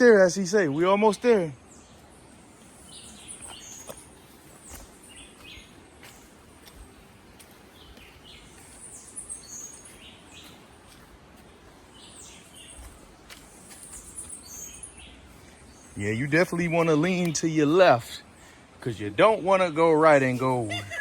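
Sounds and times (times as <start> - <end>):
birds chirping: 0.0 - 21.0.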